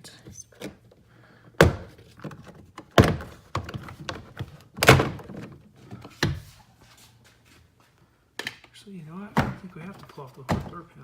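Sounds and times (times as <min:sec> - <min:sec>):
hollow plastic thunks: 0:01.6 - 0:06.5, 0:09.3 - 0:10.8.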